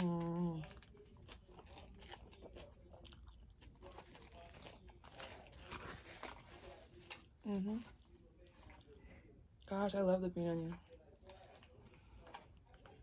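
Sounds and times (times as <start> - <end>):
person chewing food: 0.0 - 9.7, 10.6 - 13.0.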